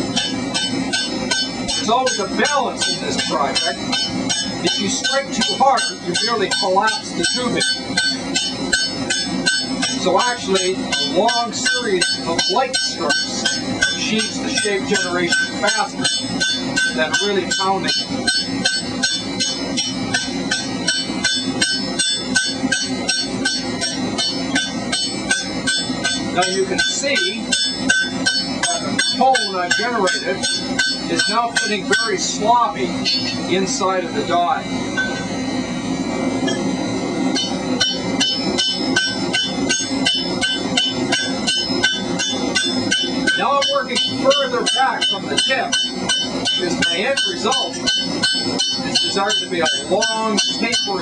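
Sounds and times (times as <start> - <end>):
hammer ringing on steel pipe: 0.0 - 35.6, 36.4 - 51.0.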